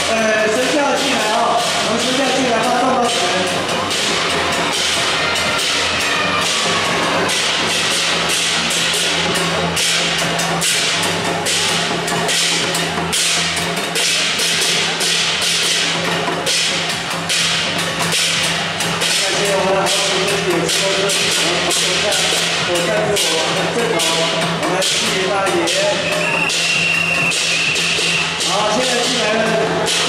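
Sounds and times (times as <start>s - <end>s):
drums and cymbals striking: 0.0s - 30.0s.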